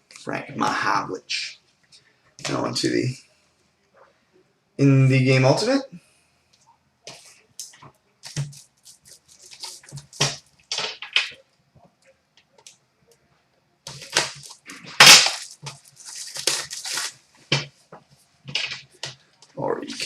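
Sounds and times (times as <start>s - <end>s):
packaging crinkling and rustling: 8.2s - 11.3s, 13.9s - 17.6s.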